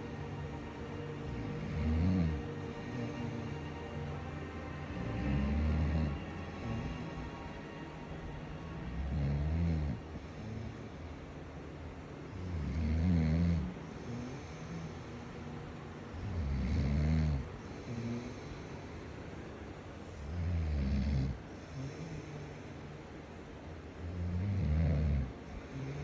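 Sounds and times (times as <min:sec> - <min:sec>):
person snoring: 0:01.1 - 0:04.0, 0:04.8 - 0:07.4, 0:08.8 - 0:11.0, 0:12.3 - 0:15.4, 0:16.2 - 0:18.7, 0:20.2 - 0:22.7, 0:24.0 - 0:26.0.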